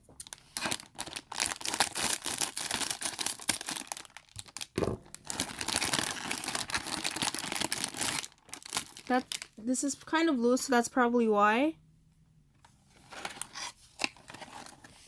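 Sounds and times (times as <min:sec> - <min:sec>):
plastic packaging crinkling and tearing: 0:00.1 - 0:09.6, 0:13.0 - 0:15.0.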